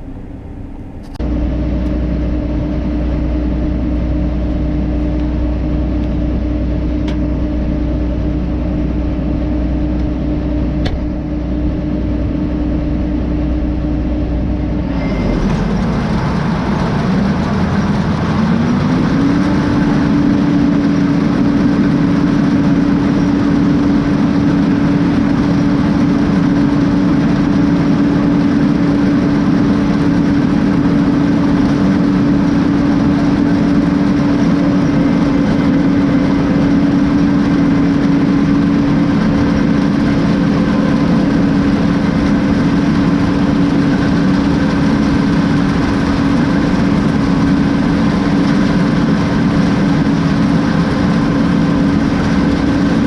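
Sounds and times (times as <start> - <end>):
combine harvester humming: 0.0 - 53.0.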